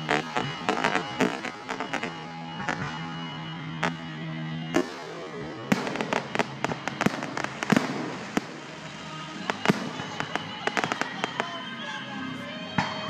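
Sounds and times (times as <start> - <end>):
firework bangs: 0.0 - 12.0
crackling fireworks: 0.0 - 13.0.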